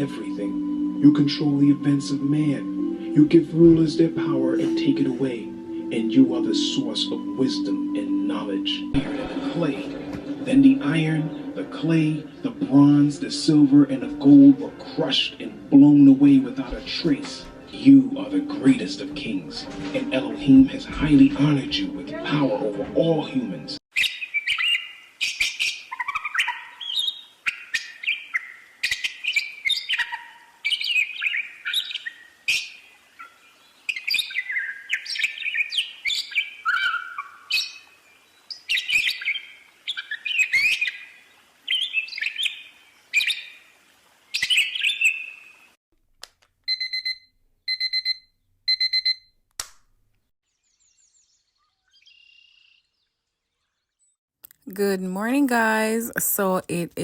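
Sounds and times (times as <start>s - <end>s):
birds chirping: 23.4s - 43.7s, 44.3s - 45.8s.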